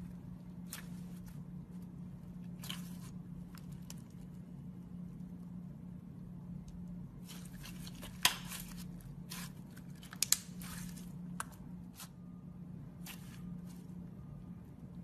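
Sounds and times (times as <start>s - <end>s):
slime squishing and crinkling: 0.0s - 5.2s, 7.0s - 12.2s, 13.0s - 14.0s
steady low hum: 0.0s - 15.0s.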